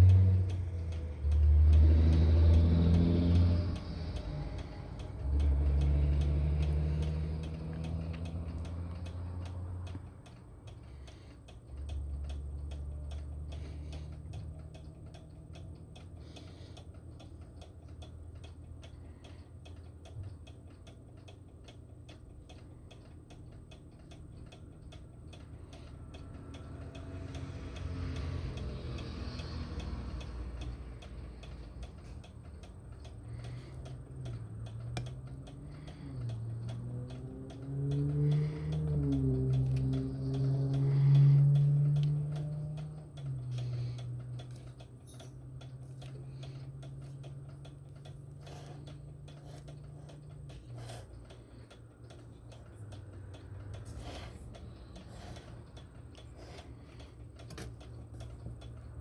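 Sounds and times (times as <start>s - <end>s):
mechanical timer ticking: 0.0s - 59.0s.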